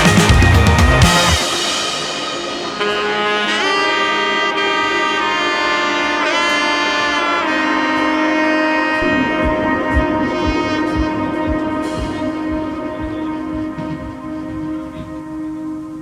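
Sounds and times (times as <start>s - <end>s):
lead notes sliding in pitch: 0.0s - 16.0s
steady low note: 9.0s - 16.0s.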